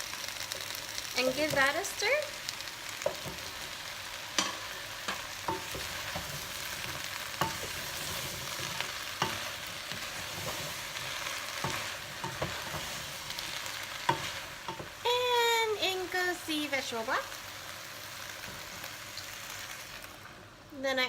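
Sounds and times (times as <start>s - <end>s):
vegetables sizzling in oil: 0.0s - 21.0s.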